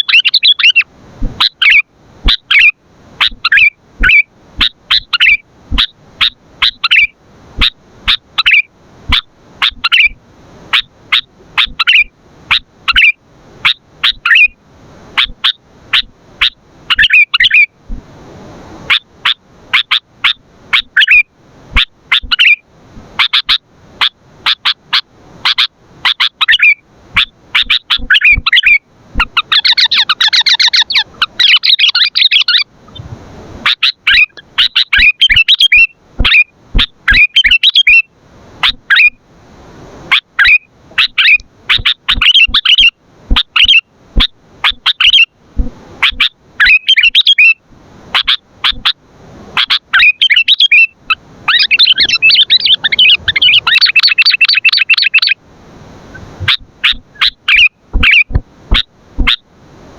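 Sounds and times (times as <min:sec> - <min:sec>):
bird chirping and chattering: 0:00.0 - 0:00.8, 0:01.4 - 0:10.2, 0:10.8 - 0:13.2, 0:14.0 - 0:14.5, 0:15.2 - 0:17.7, 0:18.9 - 0:21.2, 0:21.8 - 0:22.6, 0:23.2 - 0:33.0, 0:33.7 - 0:39.1, 0:40.4 - 0:43.8, 0:44.6 - 0:45.3, 0:46.0 - 0:47.6, 0:49.6 - 0:55.4, 0:56.4 - 0:59.4.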